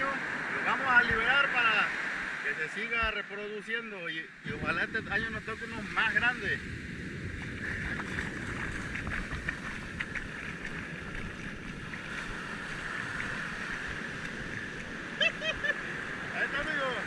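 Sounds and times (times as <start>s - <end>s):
surf: 0.0s - 17.0s
wind noise: 4.4s - 17.0s.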